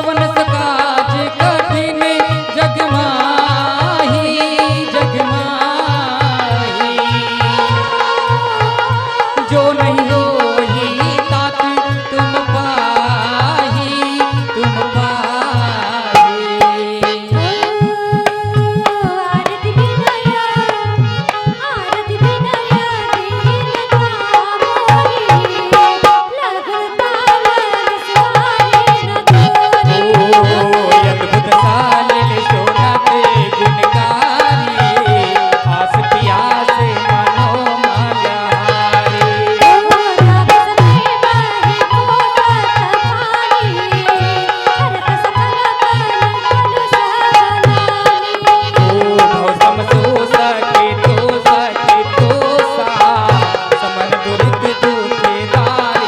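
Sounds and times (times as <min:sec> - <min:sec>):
hand drum rhythm: 0:00.0 - 0:26.3, 0:27.1 - 0:56.0
sustained melody: 0:25.0 - 0:56.0.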